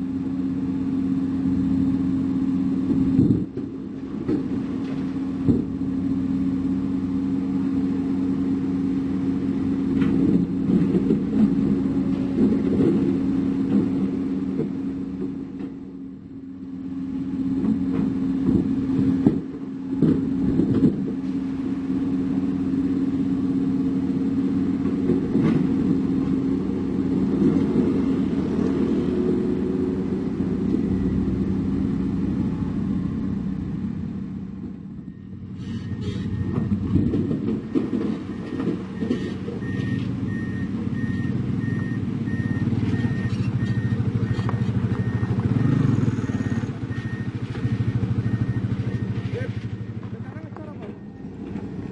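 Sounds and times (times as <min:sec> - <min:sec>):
diesel machinery engine drone: 0:00.0 - 0:51.9
reversing alarm beeping: 0:30.8 - 0:31.7, 0:34.9 - 0:36.8, 0:38.2 - 0:51.6.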